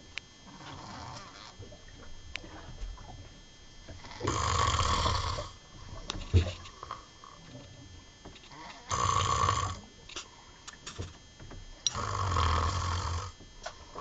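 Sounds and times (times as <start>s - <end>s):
person snoring: 4.2s - 5.5s, 8.9s - 9.8s, 11.9s - 13.3s.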